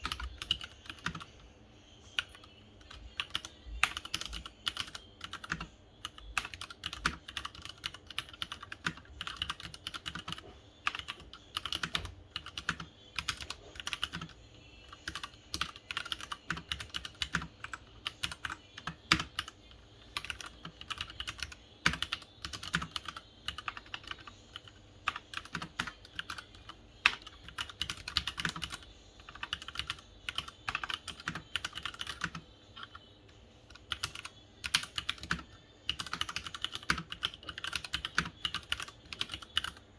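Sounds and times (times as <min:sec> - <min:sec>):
mechanical keyboard typing: 0:00.0 - 0:01.3, 0:02.2 - 0:33.0, 0:33.7 - 0:39.8.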